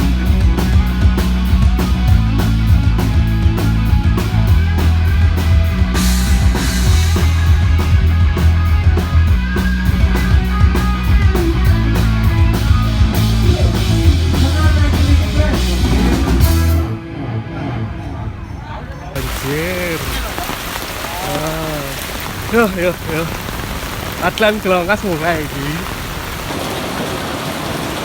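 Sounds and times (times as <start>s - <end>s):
rock song over loudspeakers: 0.0s - 18.4s.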